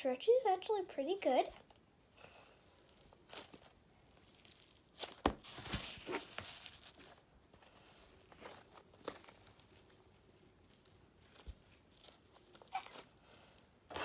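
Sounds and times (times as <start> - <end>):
foam slime squishing: 2.2 - 14.0.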